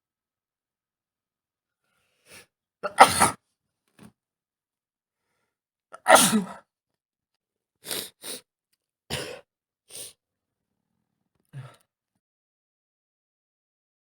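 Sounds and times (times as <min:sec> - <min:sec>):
man sneezing: 0:02.9 - 0:03.4, 0:06.0 - 0:06.6
noisy sniffs and breaths: 0:07.8 - 0:08.4, 0:09.1 - 0:10.2.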